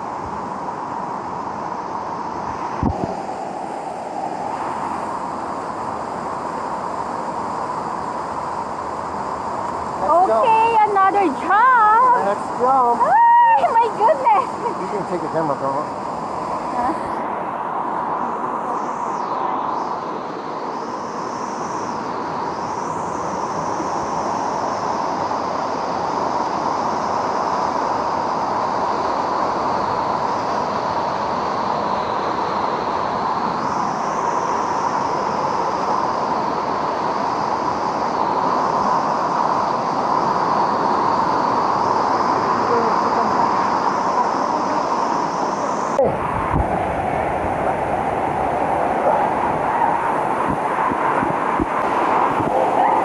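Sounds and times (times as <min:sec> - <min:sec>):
faint high whine: 0:00.0 - 0:53.0
waterfall rushing: 0:34.8 - 0:53.0.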